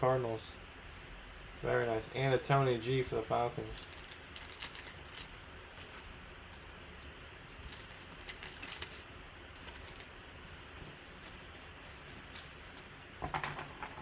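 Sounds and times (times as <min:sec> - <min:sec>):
low room hum: 0:00.0 - 0:14.0
trading cards scraping and rustling: 0:07.6 - 0:13.7.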